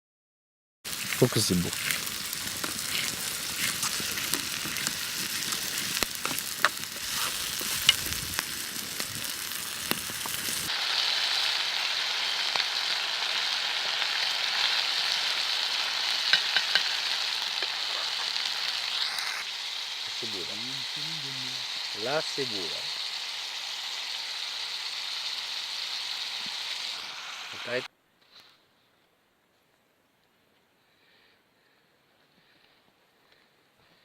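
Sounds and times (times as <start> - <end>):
food sizzling in a pan: 0.9 - 27.9.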